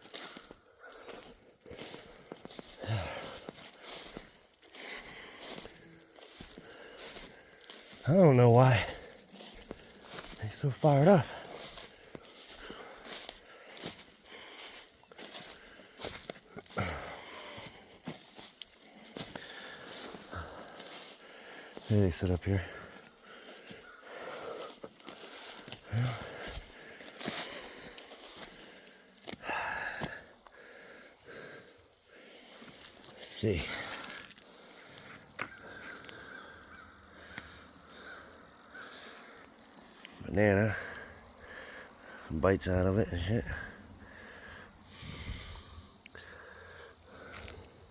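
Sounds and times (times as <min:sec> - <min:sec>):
footsteps through brush: 0:00.0 - 0:30.6, 0:31.7 - 0:42.8, 0:47.1 - 0:47.9
high steady hiss: 0:00.0 - 0:47.9
distant crows cawing: 0:34.9 - 0:39.4.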